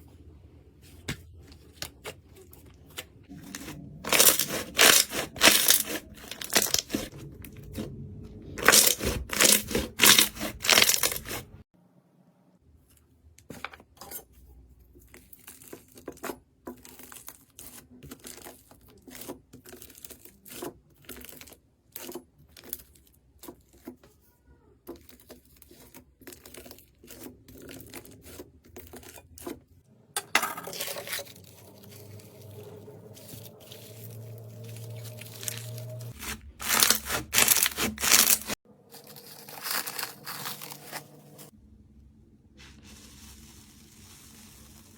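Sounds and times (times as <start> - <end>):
crunchy slime crackling: 1.9 - 7.9, 8.6 - 11.6, 30.8 - 41.5.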